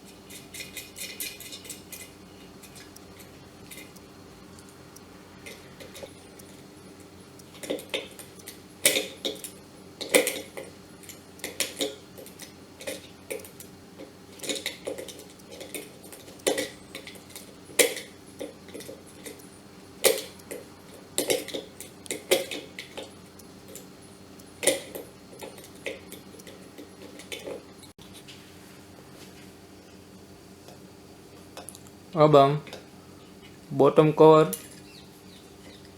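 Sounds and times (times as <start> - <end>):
metallic clicks and clinks: 0.0 - 4.8, 5.4 - 27.9
faint steady hum: 0.0 - 35.9.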